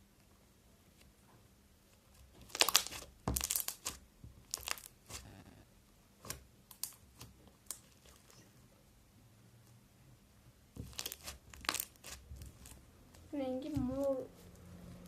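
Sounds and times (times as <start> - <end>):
slime crackling and popping: 2.0 - 5.4, 6.2 - 8.4, 10.7 - 14.2.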